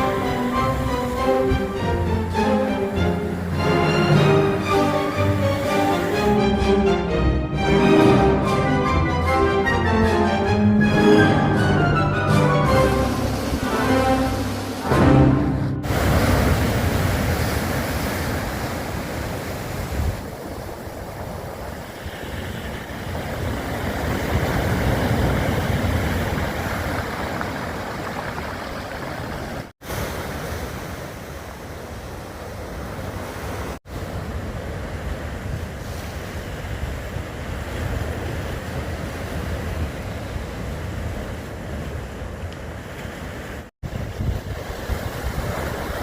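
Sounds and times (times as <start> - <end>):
sea waves rushing: 0.0 - 46.0
wind buffeting microphone: 15.8 - 46.0.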